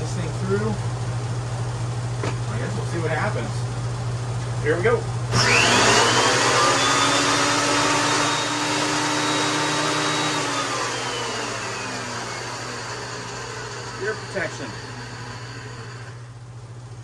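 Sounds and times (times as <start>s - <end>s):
planer cutting wood: 5.3s - 16.3s
planer motor whine: 5.3s - 16.4s.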